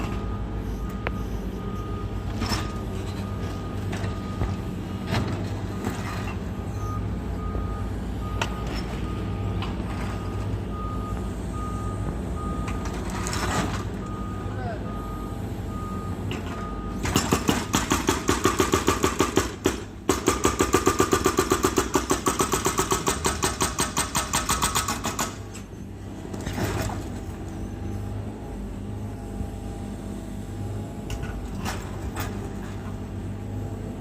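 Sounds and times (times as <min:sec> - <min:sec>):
diesel engine humming: 0:00.0 - 0:23.1, 0:23.8 - 0:34.0
hydraulic breaker hammering: 0:17.0 - 0:25.5.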